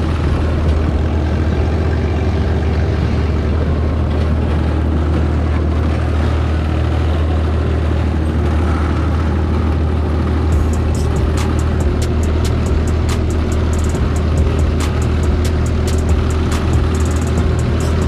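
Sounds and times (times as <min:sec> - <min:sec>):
dune buggy engine drone: 0:00.0 - 0:18.0
rapid sharp ticks: 0:10.5 - 0:18.0.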